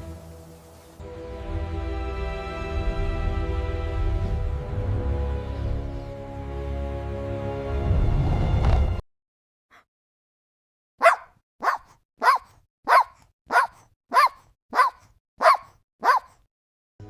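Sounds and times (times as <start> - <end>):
puppy barking: 11.0 - 16.5.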